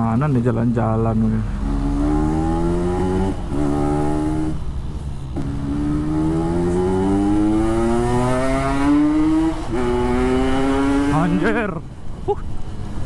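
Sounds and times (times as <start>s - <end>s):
two-stroke motorcycle engine revving: 1.6s - 4.6s, 5.4s - 11.6s.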